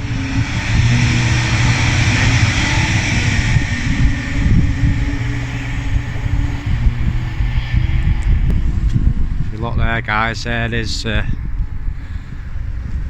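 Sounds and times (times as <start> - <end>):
road traffic: 0.0 - 13.0
wind buffeting microphone: 0.0 - 13.0.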